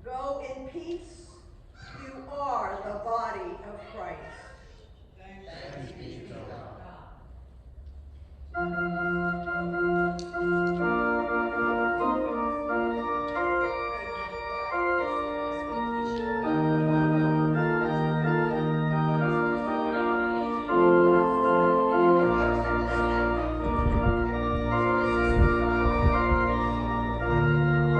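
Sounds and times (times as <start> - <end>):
organ chords: 8.4 - 27.9
deep bass organ note: 8.6 - 27.9.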